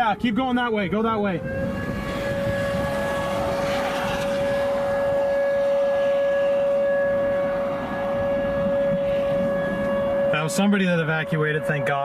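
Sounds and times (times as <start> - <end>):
warning siren steady tone: 0.0 - 12.0
dense rushing noise: 1.1 - 11.0.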